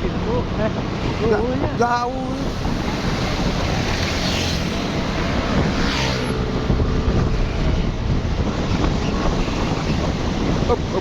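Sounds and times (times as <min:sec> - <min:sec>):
vehicle engines running: 0:00.0 - 0:11.0
wind buffeting microphone: 0:00.0 - 0:11.0
hissing swells: 0:02.2 - 0:06.6.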